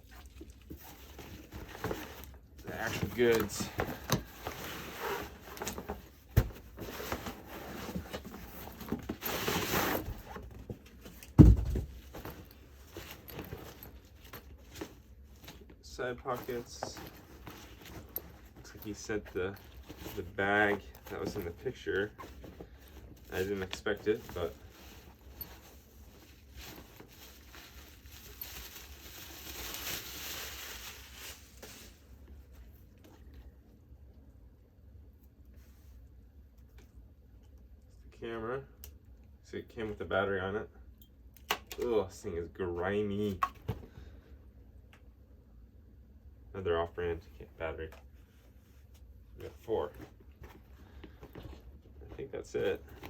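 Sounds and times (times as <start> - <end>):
bag clicks and rustles: 0.1 - 32.2, 49.9 - 53.0.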